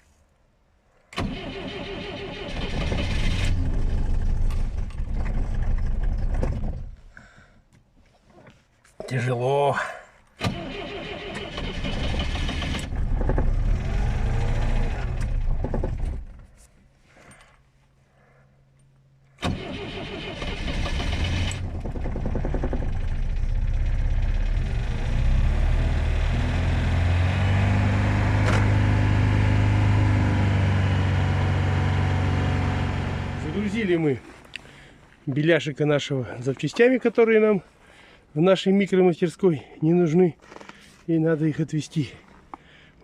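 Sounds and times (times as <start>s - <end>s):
car engine cranking and idling: 1.2s - 7.1s, 10.4s - 16.6s, 19.4s - 35.3s.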